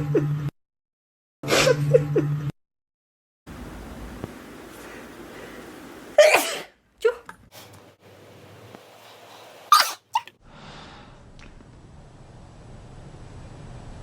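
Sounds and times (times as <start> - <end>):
person sneezing: 6.2 - 6.7, 9.7 - 10.3.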